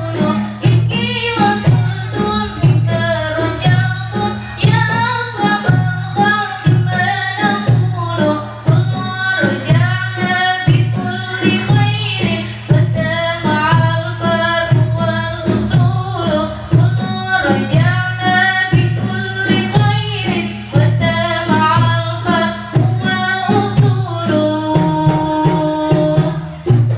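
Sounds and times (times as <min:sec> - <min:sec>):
woman singing: 0:00.0 - 0:26.7
frame drums beating: 0:00.0 - 0:26.9.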